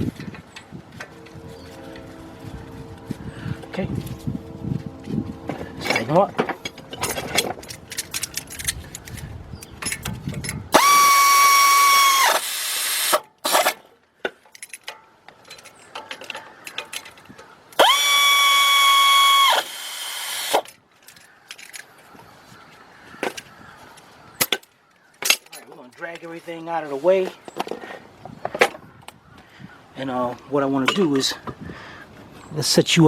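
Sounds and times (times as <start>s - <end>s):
power tool whining: 0.0s - 13.7s, 17.8s - 20.7s
metal tools clicking and clanking: 5.8s - 10.7s, 14.4s - 17.5s, 20.6s - 21.9s, 24.4s - 26.3s.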